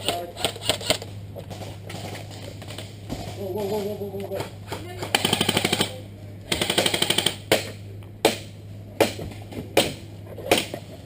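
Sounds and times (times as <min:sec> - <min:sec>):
airsoft gun full-auto burst: 0:05.2 - 0:07.4.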